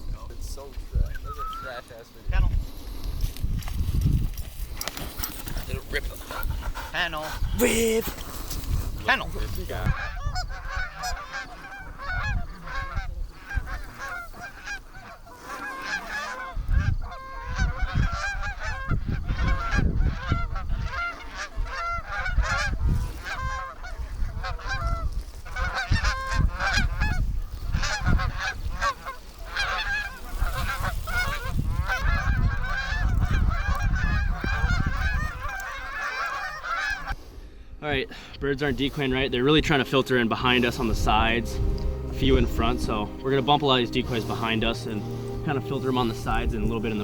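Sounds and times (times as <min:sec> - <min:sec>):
geese honking: 0:09.0 - 0:37.5, 0:38.1 - 0:47.0
low rumble: 0:38.5 - 0:47.0.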